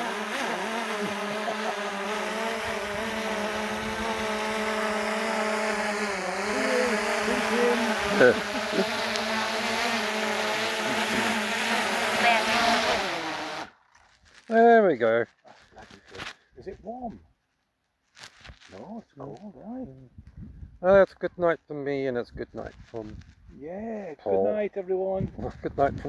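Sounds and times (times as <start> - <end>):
drone propellers humming: 0.0 - 13.7.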